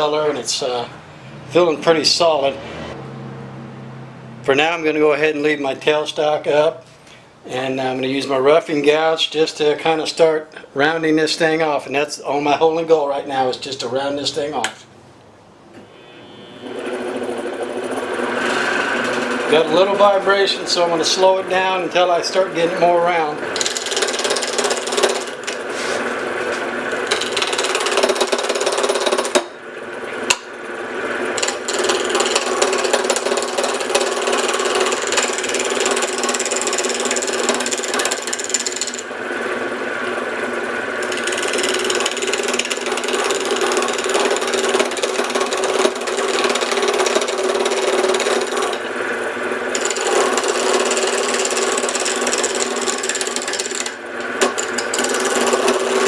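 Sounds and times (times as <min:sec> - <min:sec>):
lathe motor hum: 0:15.9 - 0:56.0
gouge scraping wood on lathe: 0:16.6 - 0:23.0, 0:23.6 - 0:29.4, 0:31.3 - 0:39.5, 0:41.0 - 0:49.0, 0:49.7 - 0:56.0.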